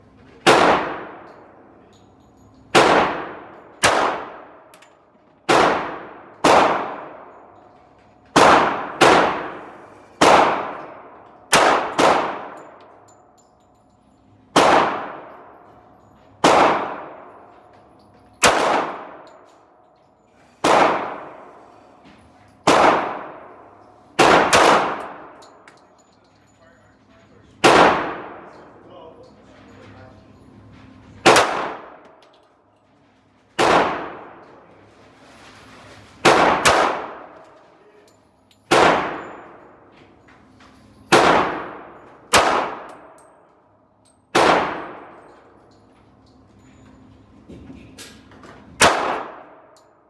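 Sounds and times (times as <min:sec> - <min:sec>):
echoing pistol gunshots: 0:00.5 - 0:01.3, 0:02.8 - 0:04.6, 0:05.5 - 0:07.3, 0:08.4 - 0:12.8, 0:14.6 - 0:15.4, 0:16.4 - 0:17.3, 0:18.4 - 0:19.2, 0:20.6 - 0:21.5, 0:22.7 - 0:23.6, 0:24.2 - 0:25.4, 0:27.6 - 0:28.5, 0:31.3 - 0:32.0, 0:33.6 - 0:34.4, 0:36.2 - 0:37.4, 0:38.7 - 0:39.6, 0:41.1 - 0:43.2, 0:44.4 - 0:45.2, 0:48.8 - 0:49.7.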